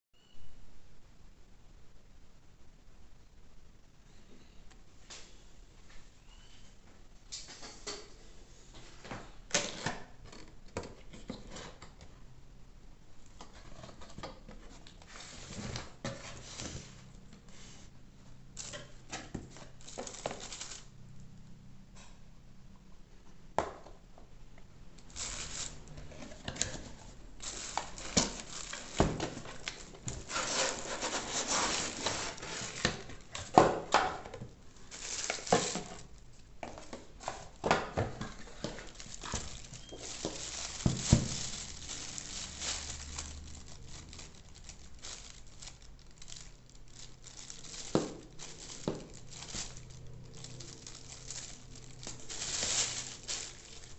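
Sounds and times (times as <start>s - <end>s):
packaging rustling and tearing: 18.6s - 21.0s, 25.0s - 53.9s.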